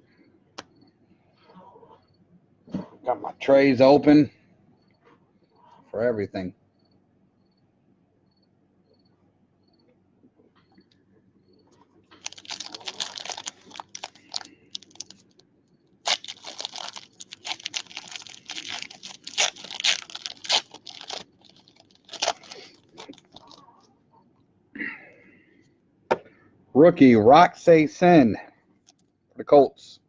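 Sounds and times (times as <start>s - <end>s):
plastic wrapping crinkling: 12.1s - 23.7s.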